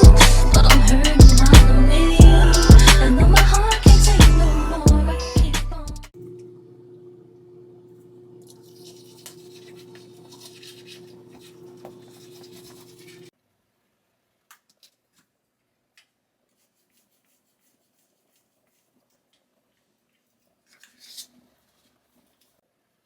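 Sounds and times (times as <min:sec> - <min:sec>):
scratching and rubbing: 0:08.6 - 0:13.3, 0:16.4 - 0:22.6.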